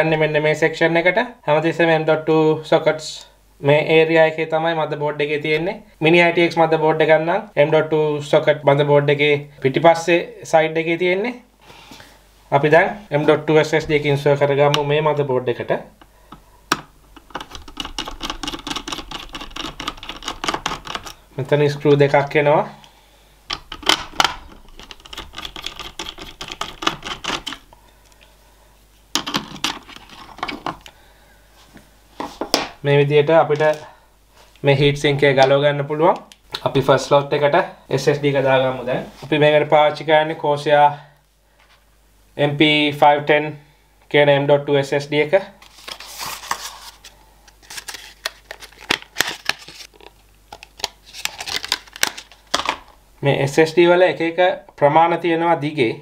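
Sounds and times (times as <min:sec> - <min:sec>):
plastic packaging crinkling: 0:45.6 - 0:53.0.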